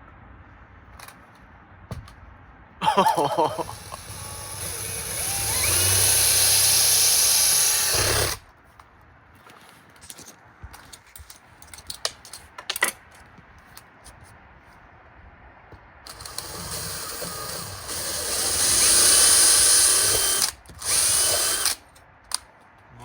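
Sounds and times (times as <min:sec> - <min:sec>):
power drill boring: 0:03.6 - 0:08.4, 0:16.1 - 0:21.8
handling clicks and knocks: 0:09.5 - 0:13.8.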